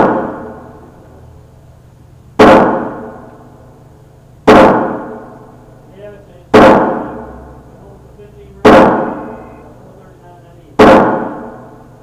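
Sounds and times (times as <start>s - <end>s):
gunshots with echo: 0.0s - 0.9s, 2.4s - 3.6s, 4.4s - 5.6s, 6.5s - 7.4s, 8.6s - 9.6s, 10.8s - 11.9s.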